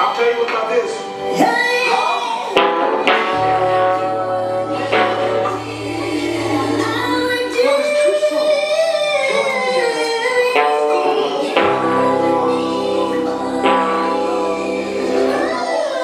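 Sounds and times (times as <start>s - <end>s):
wordless sung melody: 0.0s - 16.0s
live band playing: 1.0s - 8.0s, 10.6s - 16.0s
bass guitar: 2.6s - 7.6s, 11.6s - 15.6s.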